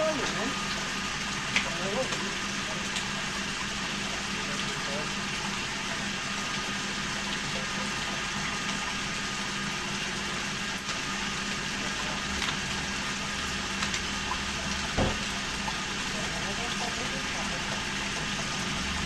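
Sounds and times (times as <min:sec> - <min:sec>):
steady machine hum: 0:00.0 - 0:19.0.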